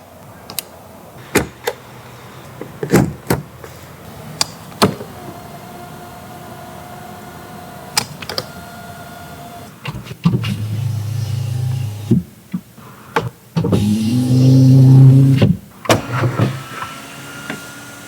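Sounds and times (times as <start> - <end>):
electric motor whine: 10.5 - 12.1, 13.8 - 15.4.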